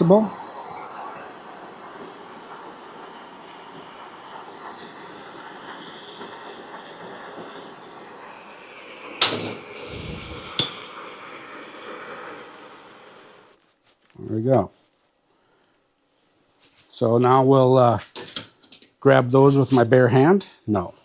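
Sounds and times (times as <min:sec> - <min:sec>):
heating torch hissing: 0:00.0 - 0:13.6.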